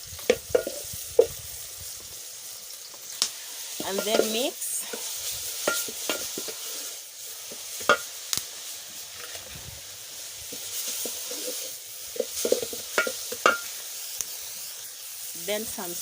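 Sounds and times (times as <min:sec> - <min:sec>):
vegetables sizzling in oil: 0:00.0 - 0:16.0.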